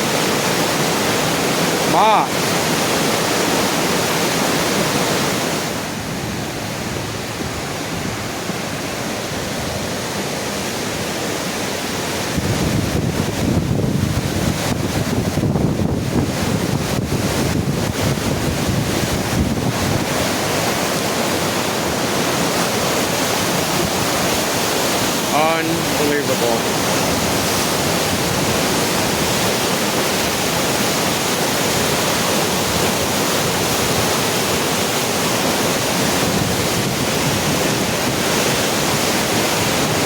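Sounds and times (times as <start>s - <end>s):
flooding creek roaring: 0.0s - 40.0s
wind buffeting microphone: 12.2s - 26.0s, 26.6s - 34.4s, 35.7s - 40.0s.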